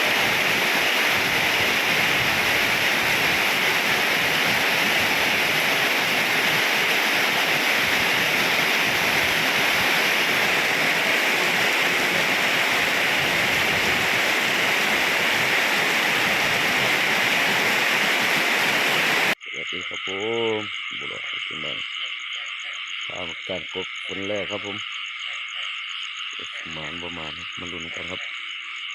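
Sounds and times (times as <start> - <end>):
frog croak: 0.0 - 17.6, 19.3 - 28.9
heavy rain hissing: 0.0 - 19.4
frogs and insects calling: 0.0 - 28.9.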